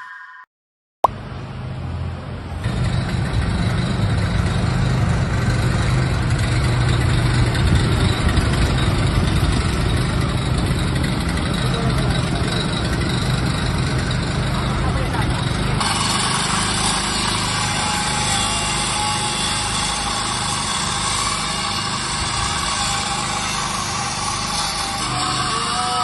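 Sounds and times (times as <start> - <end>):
heavy truck engine idling: 1.2 - 26.0.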